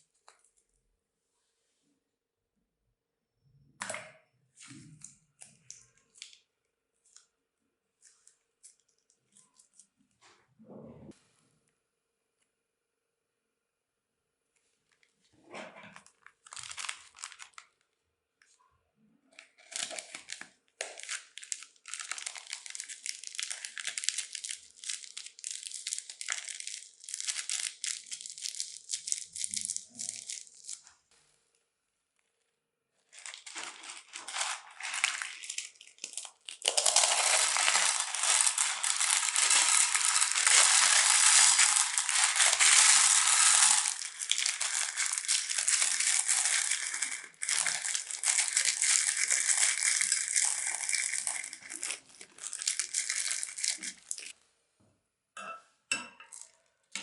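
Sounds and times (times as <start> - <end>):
crunchy slime being squeezed: 33.2 - 54.3.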